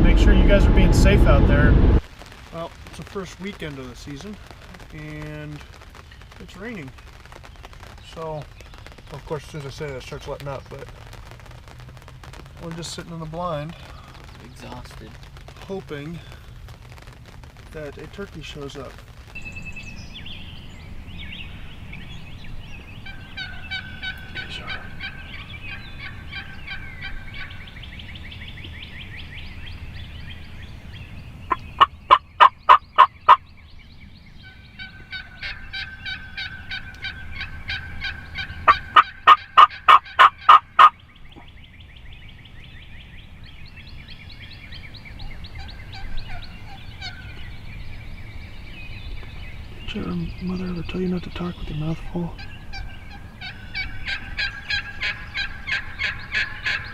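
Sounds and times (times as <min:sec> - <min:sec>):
wild turkey yelping: 0:23.0 - 0:27.7, 0:31.5 - 0:33.4, 0:34.4 - 0:41.5, 0:45.3 - 0:47.4, 0:52.3 - 0:56.9
fast chattering bird calls: 0:44.2 - 0:56.9.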